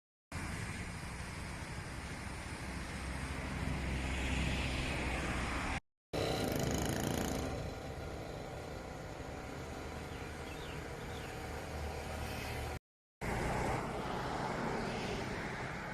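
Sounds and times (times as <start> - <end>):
road traffic passing: 0.3 - 15.9.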